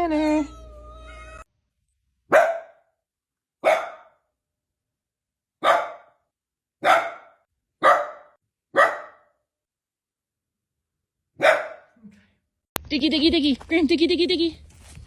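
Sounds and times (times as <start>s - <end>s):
dog barking: 2.3s - 2.9s, 3.6s - 4.2s, 5.6s - 6.2s, 6.8s - 9.4s, 11.4s - 12.0s.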